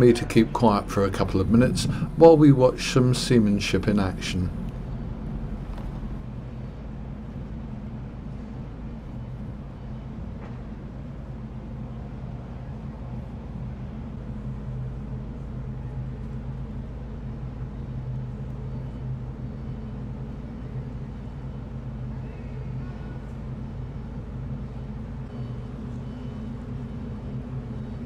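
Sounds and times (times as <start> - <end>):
low hum and hiss: 0.0 - 28.0
ship engines droning: 0.0 - 28.0.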